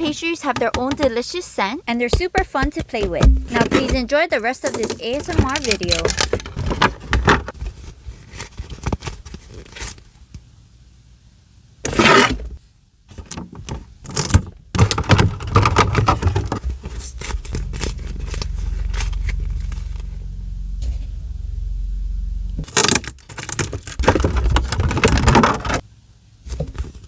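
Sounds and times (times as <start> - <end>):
scraping and tapping: 0.0 - 7.6, 22.6 - 25.8
low rumble: 16.1 - 22.8.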